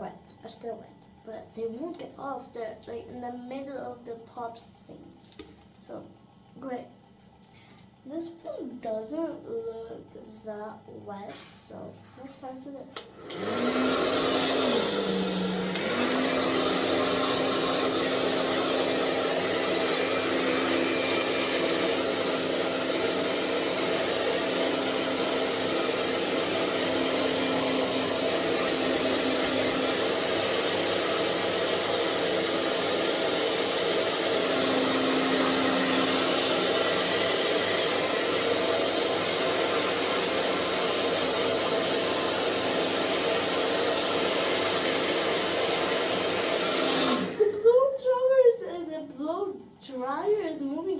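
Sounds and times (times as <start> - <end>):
hair dryer running: 12.6 - 48.4.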